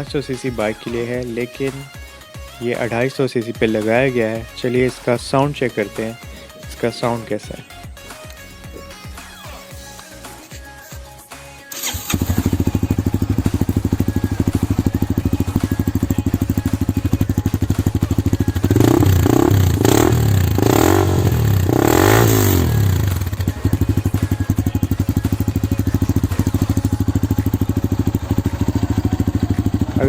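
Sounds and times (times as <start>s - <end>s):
motorcycle idling and revving: 11.8s - 30.0s.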